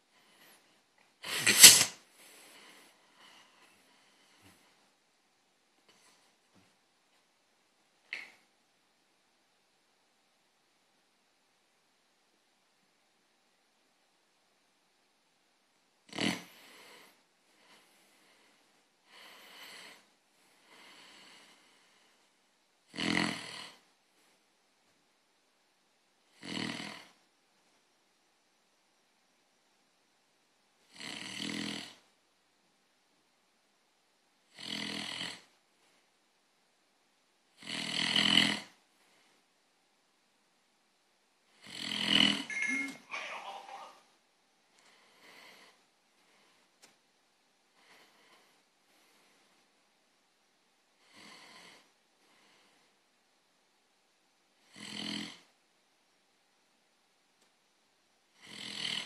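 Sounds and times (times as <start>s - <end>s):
soft breaths: 0.0s - 5.0s, 16.3s - 22.5s, 38.7s - 39.7s, 44.7s - 50.0s, 50.9s - 53.2s
person snoring: 22.9s - 23.8s, 26.4s - 27.2s, 30.9s - 32.0s, 34.5s - 35.5s, 37.6s - 38.8s, 41.6s - 42.8s, 54.7s - 55.5s, 58.4s - 59.0s.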